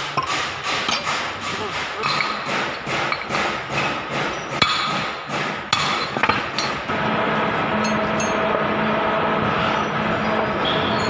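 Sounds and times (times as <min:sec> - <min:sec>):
hammer strikes on metal: 0:00.0 - 0:06.9
steady machine hum: 0:00.0 - 0:11.0.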